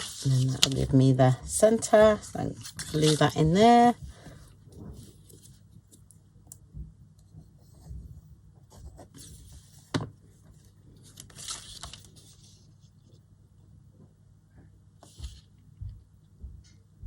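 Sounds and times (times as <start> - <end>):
paper and card rustling: 0.0 - 6.1, 8.8 - 12.8, 15.0 - 15.5.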